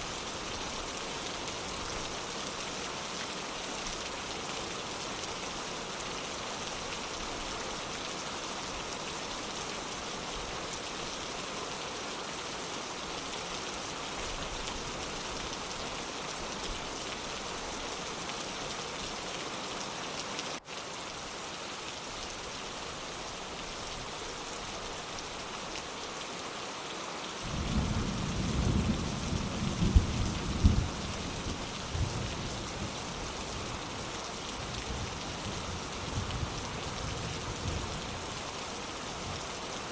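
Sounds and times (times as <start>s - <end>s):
steady rain hissing: 0.0s - 39.9s
thunder rumbling and cracking: 27.5s - 31.0s.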